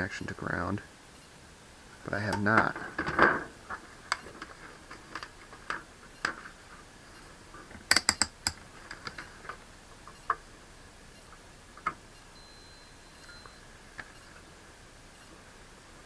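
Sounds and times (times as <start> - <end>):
probe tips tapping circuit board: 2.2 - 2.7, 7.9 - 8.6.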